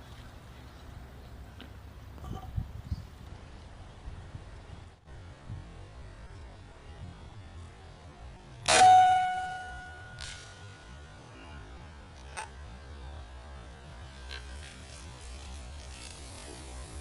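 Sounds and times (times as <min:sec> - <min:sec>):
wind rumble on microphone: 0:00.0 - 0:08.7.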